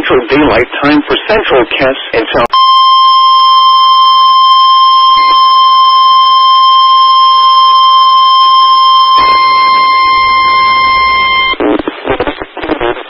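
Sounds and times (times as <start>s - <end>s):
electronic alarm tone: 2.5s - 11.6s.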